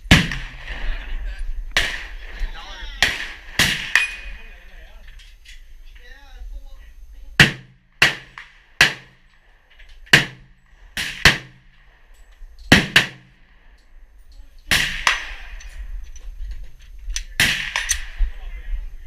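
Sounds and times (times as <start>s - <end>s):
gunshots: 0.0s - 1.1s, 1.7s - 2.4s, 3.0s - 4.4s, 7.4s - 12.0s, 12.7s - 13.6s, 14.7s - 15.6s, 17.3s - 18.4s.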